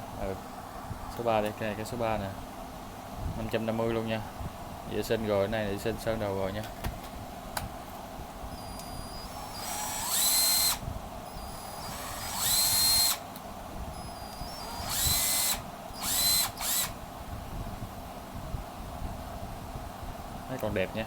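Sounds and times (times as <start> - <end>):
cordless drill motor whining: 8.5 - 17.0.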